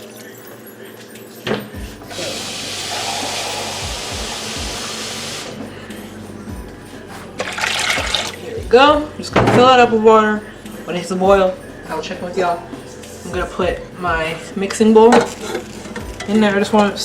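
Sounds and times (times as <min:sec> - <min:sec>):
tap water running into pot: 0:02.1 - 0:05.5, 0:07.4 - 0:08.4.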